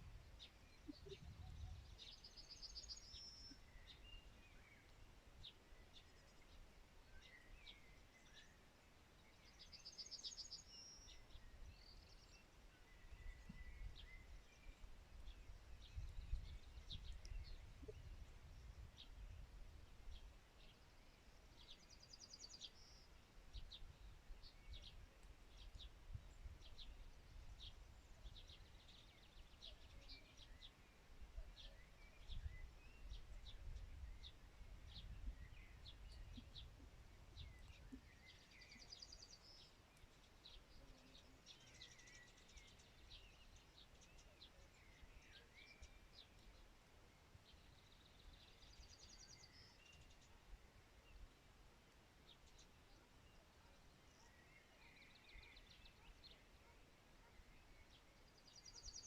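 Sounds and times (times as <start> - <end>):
bird chirps: 0.4 - 5.0, 27.7 - 46.6.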